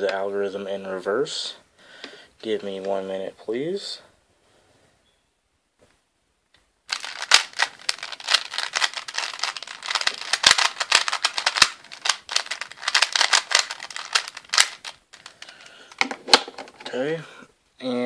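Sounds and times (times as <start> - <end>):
plastic puzzle cube clicking: 6.9 - 16.8.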